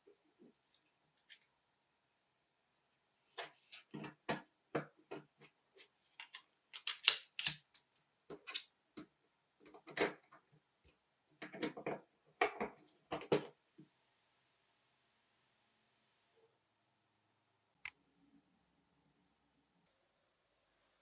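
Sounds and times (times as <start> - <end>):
small metal parts clicking: 6.2 - 8.7.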